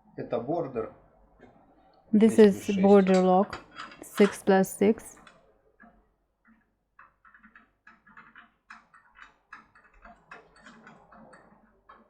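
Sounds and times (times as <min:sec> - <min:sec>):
lockpick clicking and scraping in lock: 0:06.5 - 0:12.0.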